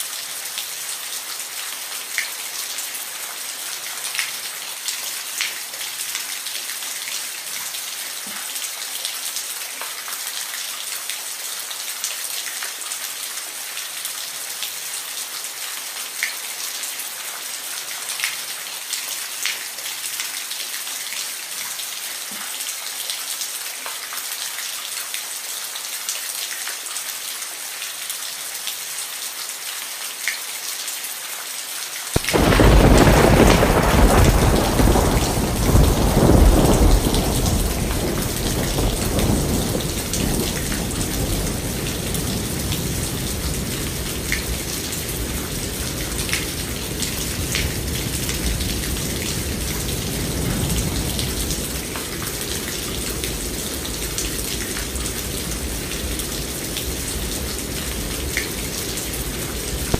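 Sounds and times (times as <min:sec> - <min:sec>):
steady rain: 0:00.0 - 0:59.9
thunder rumble: 0:32.2 - 0:59.9.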